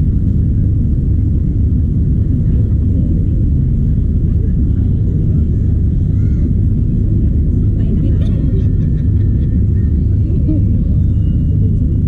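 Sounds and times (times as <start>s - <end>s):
steady low rumble: 0.0s - 12.0s.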